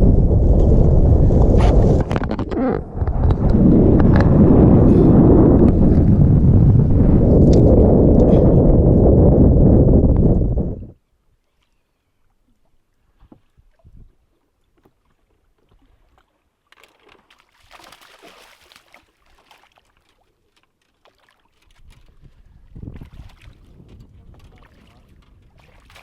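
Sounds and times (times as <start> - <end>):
splashy crackling water: 15.2 - 26.0.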